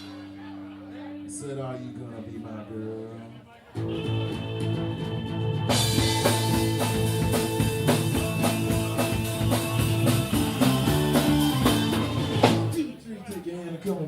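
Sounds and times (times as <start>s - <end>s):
rock band playing: 3.8s - 12.9s
drum kit beat: 3.8s - 14.0s.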